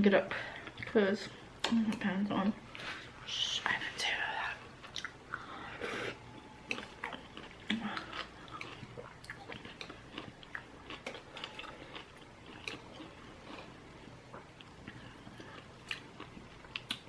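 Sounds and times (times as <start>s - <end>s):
person chewing noodles: 4.8s - 17.0s.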